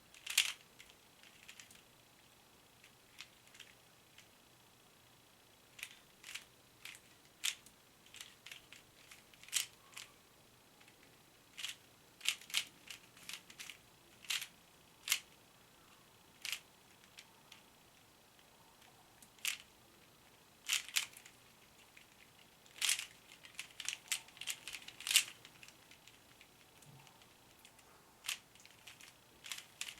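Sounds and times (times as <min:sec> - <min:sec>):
puzzle cube plastic clicks: 0:00.1 - 0:01.8, 0:05.8 - 0:10.1, 0:10.8 - 0:15.4, 0:16.4 - 0:17.6, 0:19.2 - 0:19.7, 0:20.6 - 0:29.9.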